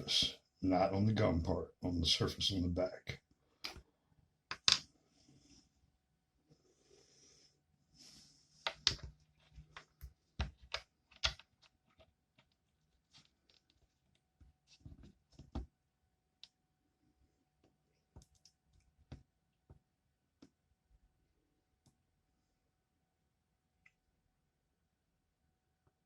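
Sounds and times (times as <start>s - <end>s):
small objects clicking and tapping: 4.5s - 4.9s, 8.6s - 13.8s.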